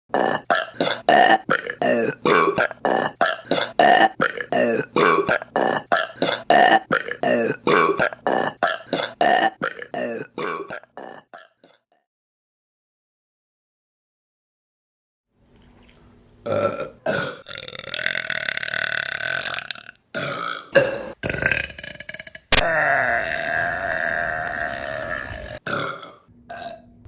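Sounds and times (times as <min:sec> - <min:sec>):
short burps: 0:00.1 - 0:11.8, 0:16.5 - 0:26.8.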